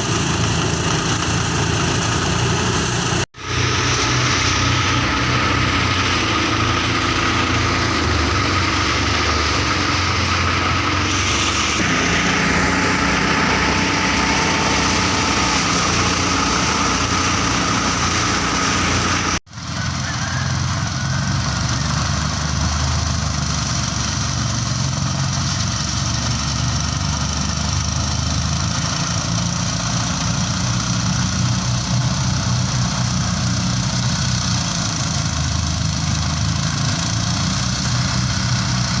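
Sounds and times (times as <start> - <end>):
diesel engine running: 0.0 - 39.0
threshing machine noise: 0.0 - 39.0.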